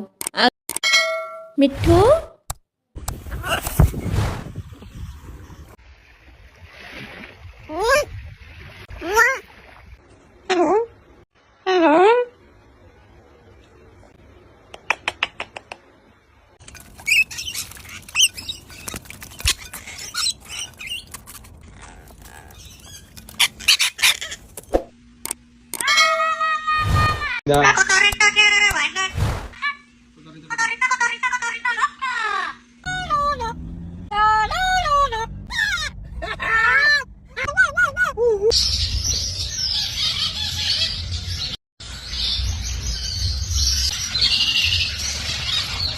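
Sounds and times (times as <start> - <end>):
parrot chirping and squawking: 16.6 - 24.6.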